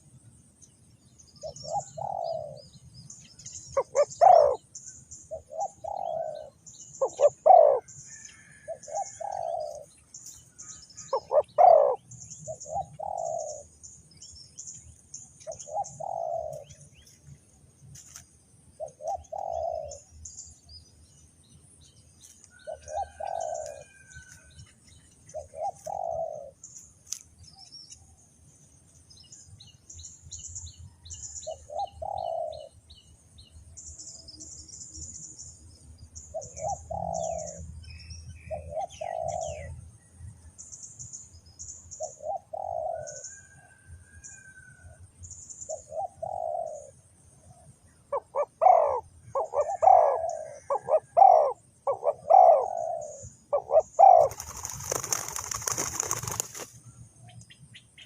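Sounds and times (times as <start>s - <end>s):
small birds chirping: 0.6s - 39.8s, 45.2s - 58.0s
dove cooing: 1.4s - 2.7s, 3.8s - 4.7s, 5.3s - 9.9s, 11.0s - 13.7s, 15.5s - 16.8s, 18.8s - 20.1s, 22.6s - 24.1s, 25.3s - 26.6s, 31.5s - 32.8s, 36.4s - 37.7s, 38.5s - 39.7s, 42.0s - 43.7s, 45.7s - 47.0s, 48.1s - 56.7s.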